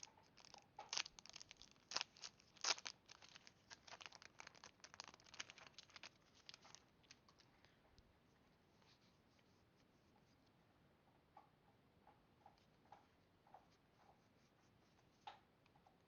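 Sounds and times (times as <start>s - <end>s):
foil wrapper tearing and crinkling: 0.0s - 6.8s.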